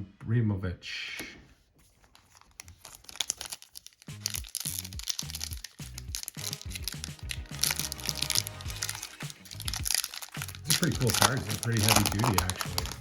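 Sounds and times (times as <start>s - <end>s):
plastic wrapper crinkling: 1.8s - 13.0s
background music: 4.0s - 13.0s.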